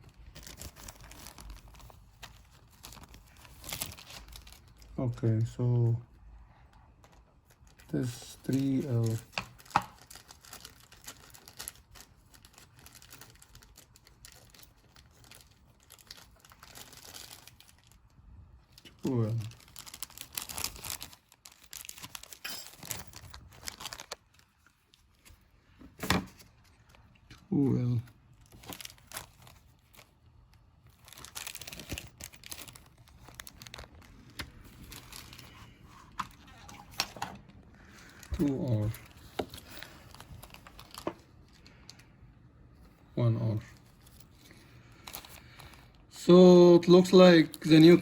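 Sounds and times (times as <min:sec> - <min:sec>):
small parts clicking and rustling: 0:18.8 - 0:25.4, 0:30.8 - 0:42.1.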